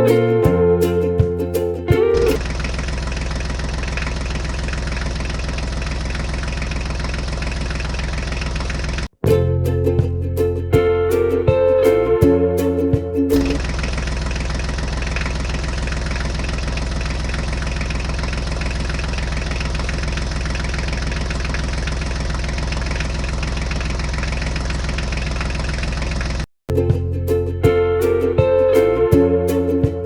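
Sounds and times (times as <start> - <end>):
engine idling with low chugging: 2.2 - 9.1, 13.4 - 26.4.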